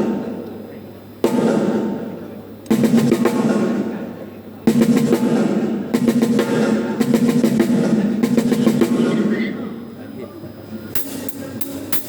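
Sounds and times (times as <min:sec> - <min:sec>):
drum kit fast rolls: 0:01.2 - 0:10.0.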